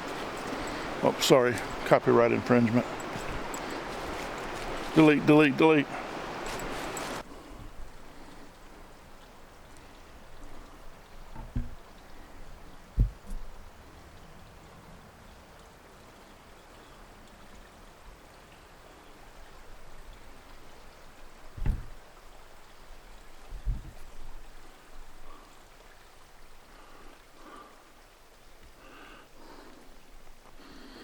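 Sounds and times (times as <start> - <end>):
low thumps: 11.3 - 11.9, 12.9 - 13.6, 21.5 - 22.0.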